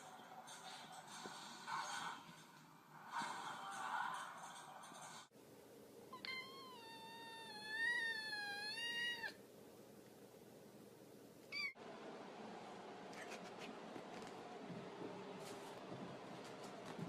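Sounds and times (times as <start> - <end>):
cat meowing: 6.2 - 9.4, 11.5 - 11.8.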